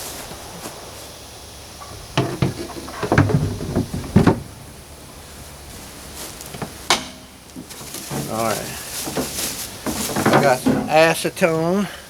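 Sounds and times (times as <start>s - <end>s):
knocks and clunks of handled objects: 1.8s - 4.6s, 6.5s - 11.0s.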